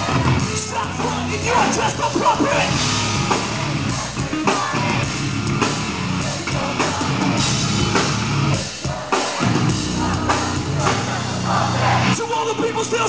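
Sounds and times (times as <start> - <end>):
bass guitar: 0.0 - 13.0
distorted electric guitars: 0.0 - 13.0
drum kit hits: 1.8 - 11.3.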